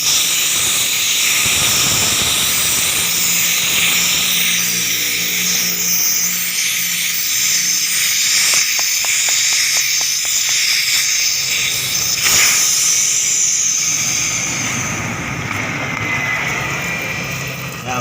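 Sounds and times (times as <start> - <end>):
small ticks: 0.0 - 13.4
compressed air hissing from drain: 0.0 - 17.8.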